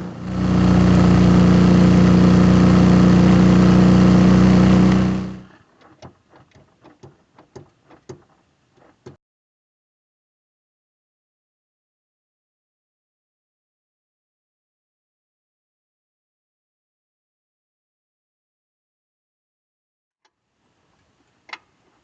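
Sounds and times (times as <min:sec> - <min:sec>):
motorcycle engine running: 0:00.0 - 0:05.5.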